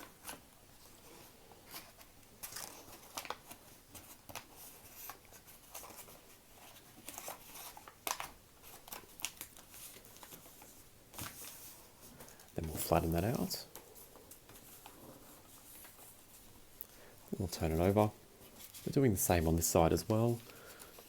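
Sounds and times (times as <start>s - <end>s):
paper rustling and crinkling: 0.0s - 16.7s, 17.3s - 21.0s.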